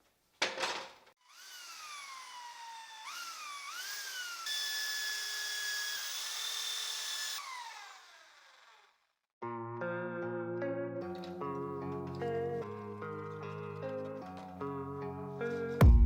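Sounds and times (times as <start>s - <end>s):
power tool motor whining: 1.2s - 9.1s.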